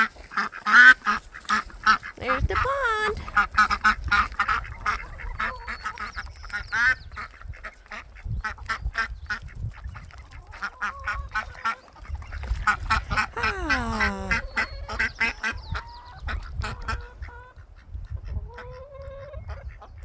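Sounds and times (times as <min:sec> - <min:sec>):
young ducks quacking: 0:00.0 - 0:14.6.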